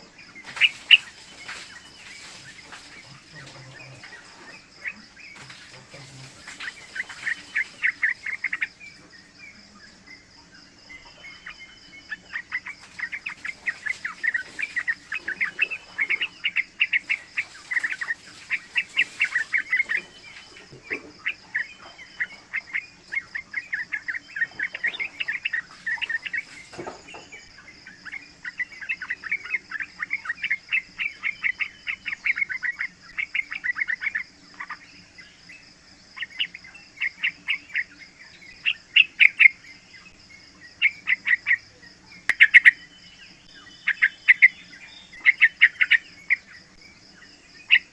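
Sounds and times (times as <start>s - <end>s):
bulbul chattering calls: 0.0s - 47.9s
insect trill: 0.0s - 47.9s.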